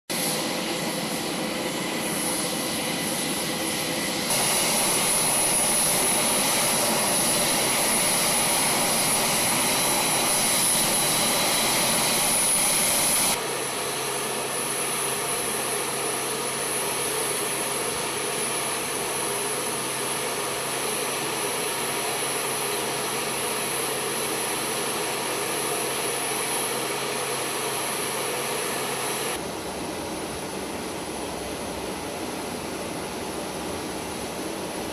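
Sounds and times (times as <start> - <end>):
turboprop engines running: 0.1 - 34.9
high engine whine: 0.2 - 21.1.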